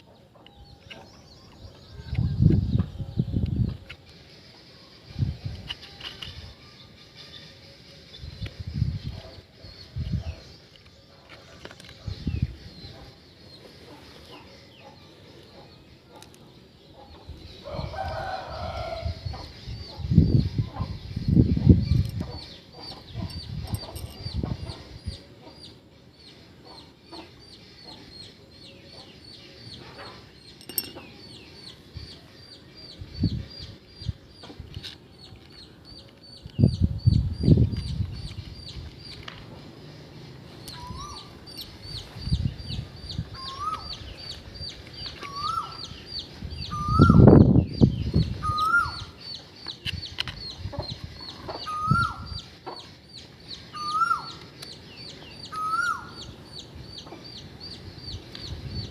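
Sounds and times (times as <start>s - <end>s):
lower rising bird call: 46.7s - 47.5s, 55.4s - 56.3s.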